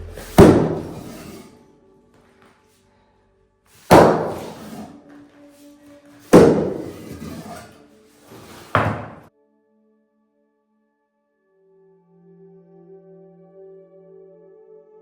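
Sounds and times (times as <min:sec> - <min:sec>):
heavy impacts: 0:00.0 - 0:01.5, 0:03.8 - 0:05.0, 0:06.2 - 0:09.3
soft background music: 0:04.9 - 0:15.0.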